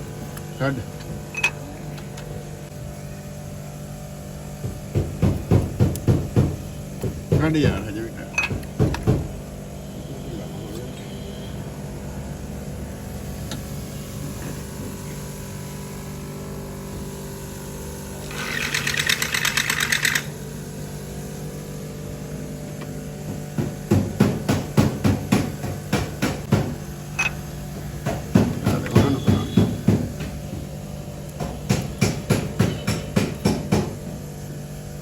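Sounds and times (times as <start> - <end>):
steady machine hum: 0.0 - 35.0
hammer blows on metal: 28.3 - 30.2.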